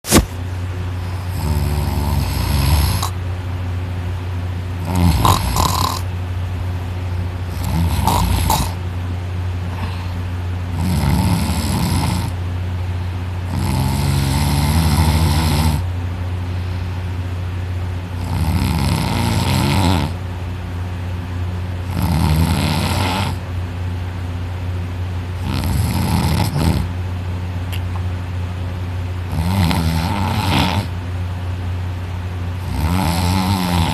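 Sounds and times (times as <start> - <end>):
low steady hum: 0.0 - 33.9
woman snoring loudly: 1.2 - 3.2, 4.8 - 6.1, 7.5 - 8.8, 10.7 - 12.4, 13.5 - 15.9, 18.2 - 20.2, 21.9 - 23.4, 25.4 - 26.9, 29.3 - 30.9, 32.6 - 33.9.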